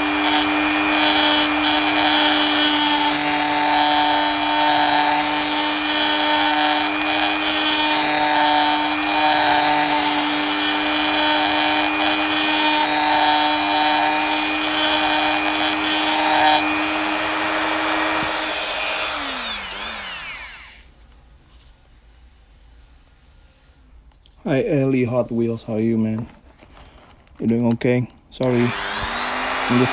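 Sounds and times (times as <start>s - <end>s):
rotary tool whirring: 0.0s - 20.8s, 28.4s - 29.9s.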